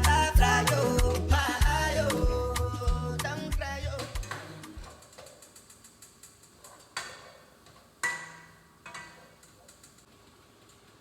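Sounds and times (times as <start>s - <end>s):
kitchenware clinking: 6.6s - 9.7s.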